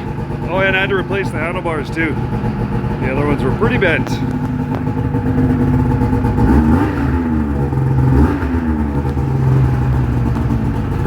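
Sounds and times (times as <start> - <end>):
snowmobile engine revving: 3.0 - 11.0.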